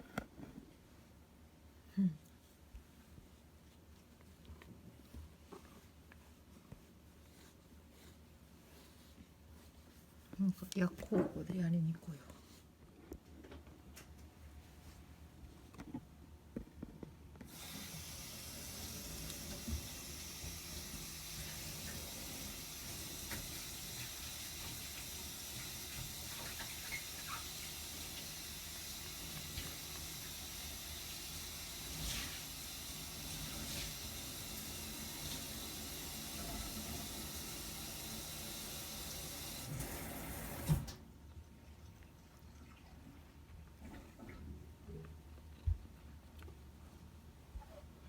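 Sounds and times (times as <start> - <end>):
water running from a tap: 17.5 - 41.0.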